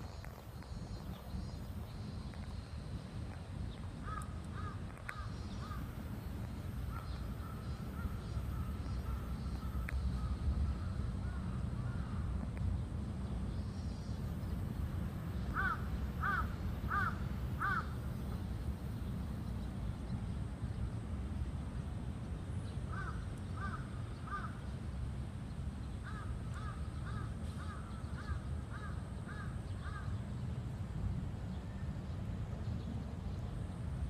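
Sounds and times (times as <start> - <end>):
steady low rumble: 0.0 - 34.0
bird calling: 15.5 - 18.0.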